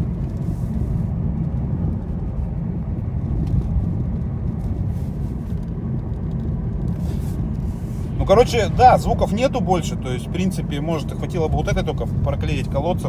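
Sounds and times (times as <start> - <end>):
road and tyre rumble in car: 0.0 - 13.0.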